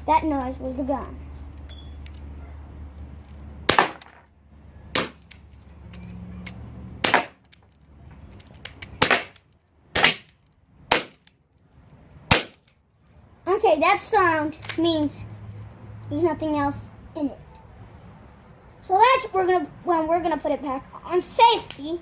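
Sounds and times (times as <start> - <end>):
bb pistol shots popping: 3.7 - 4.2, 5.0 - 5.3, 7.0 - 7.5, 9.0 - 9.4, 10.0 - 10.3, 10.9 - 11.3, 12.3 - 12.7.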